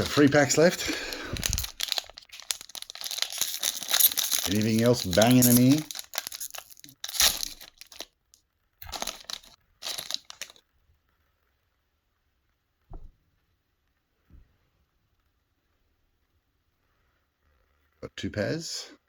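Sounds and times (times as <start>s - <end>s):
foil pack tearing and crinkling: 0.0s - 8.0s, 8.8s - 10.6s.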